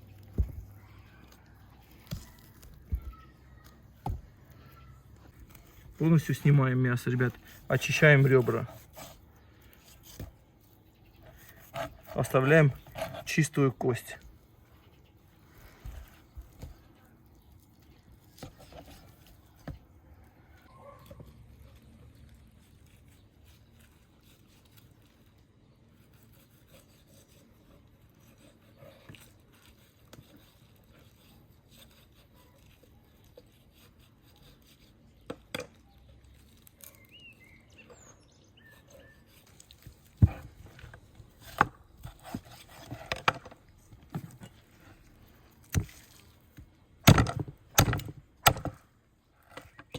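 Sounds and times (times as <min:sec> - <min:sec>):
knife scraping meat off bones: 0:05.0 - 0:14.0, 0:20.9 - 0:46.6.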